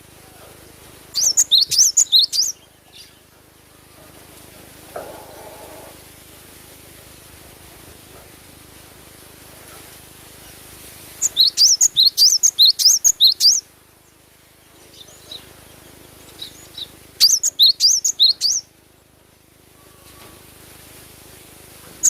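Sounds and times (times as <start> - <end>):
bird singing rapid high notes: 16.3 - 18.7.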